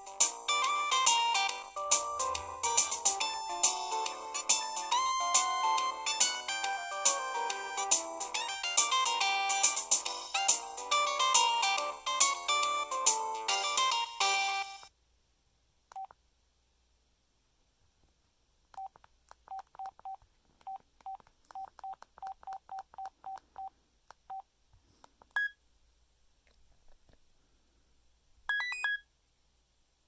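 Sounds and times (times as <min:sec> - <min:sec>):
phone keypad beeps: 0:25.4 - 0:25.6, 0:28.5 - 0:29.0.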